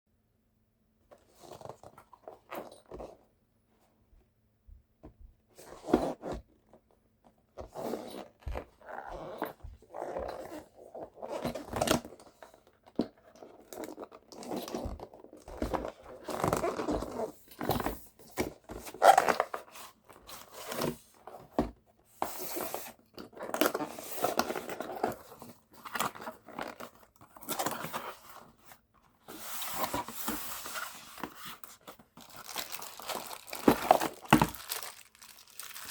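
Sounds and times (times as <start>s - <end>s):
packaging tearing and crinkling: 32.2s - 35.9s.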